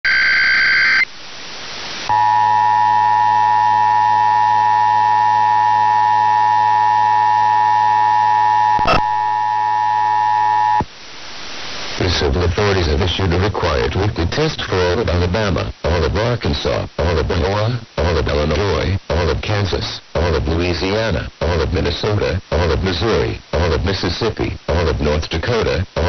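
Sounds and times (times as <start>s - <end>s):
two-tone attention signal: 2.1s - 10.8s.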